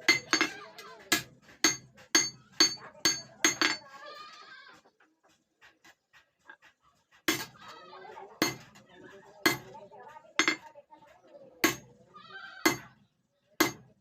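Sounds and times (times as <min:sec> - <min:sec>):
hammer striking iron: 0:00.0 - 0:03.8, 0:08.4 - 0:08.7, 0:09.5 - 0:09.7, 0:10.4 - 0:10.6, 0:11.6 - 0:11.8, 0:12.7 - 0:12.9, 0:13.6 - 0:13.8.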